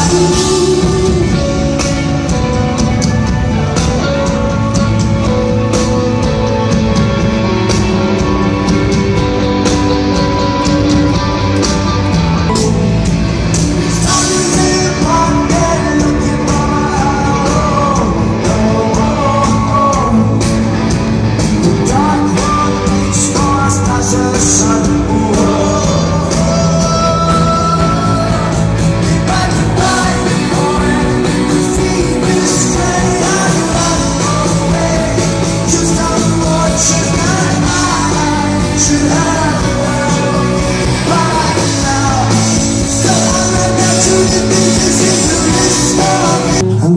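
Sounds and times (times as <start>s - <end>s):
person singing: 0.0s - 2.9s, 13.6s - 21.0s, 21.6s - 46.9s
drums: 0.0s - 46.9s
electric guitar: 0.0s - 46.9s.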